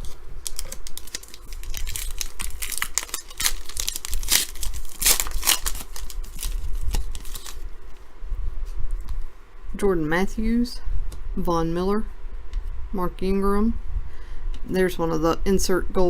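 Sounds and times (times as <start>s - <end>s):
foil wrapper tearing and crinkling: 0.0s - 7.7s.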